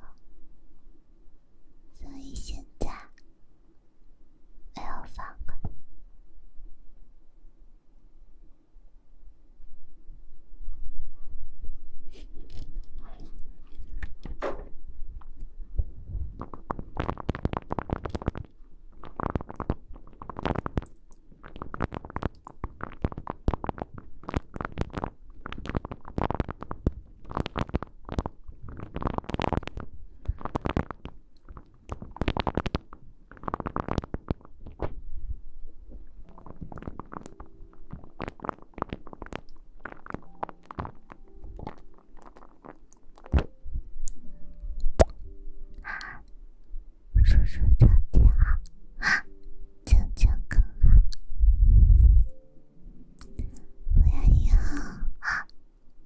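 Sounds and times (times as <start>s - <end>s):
low rubbing rumble: 9.7s - 17.3s, 49.9s - 55.2s
crackly rustling and scratching: 12.1s - 44.3s.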